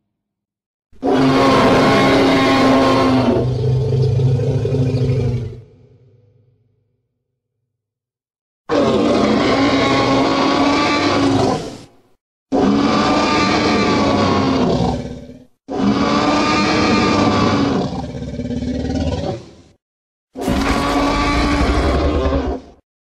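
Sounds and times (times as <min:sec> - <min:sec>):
monster roars: 0:01.0 - 0:06.2, 0:20.4 - 0:22.8.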